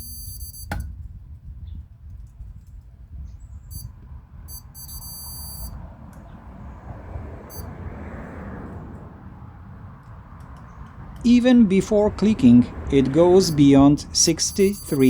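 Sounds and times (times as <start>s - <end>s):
high-pitched electronic beeping: 0.0s - 0.7s, 3.7s - 3.9s, 4.5s - 5.8s, 14.4s - 15.0s.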